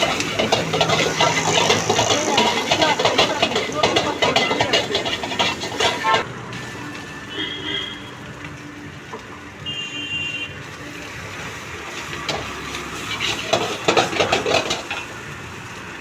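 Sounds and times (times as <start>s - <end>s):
kitchen knocks and clatter: 0.0s - 6.2s, 13.1s - 15.1s
steady cooking hiss: 0.0s - 16.0s.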